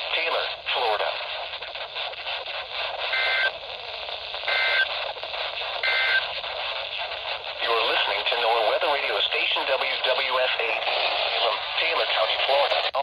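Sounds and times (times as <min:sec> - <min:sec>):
radio hiss and static: 0:00.0 - 0:13.0
warbling data tones: 0:03.1 - 0:03.5, 0:04.5 - 0:04.9, 0:05.8 - 0:06.4.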